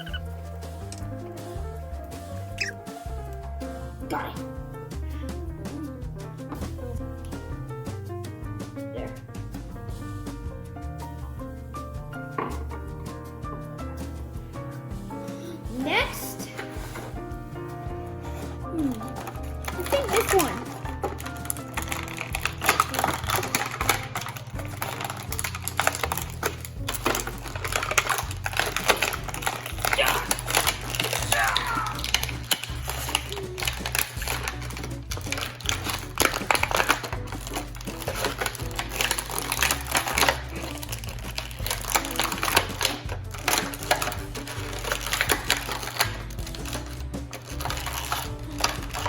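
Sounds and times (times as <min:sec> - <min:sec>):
plastic toy parts clicking: 0:18.8 - 0:49.0.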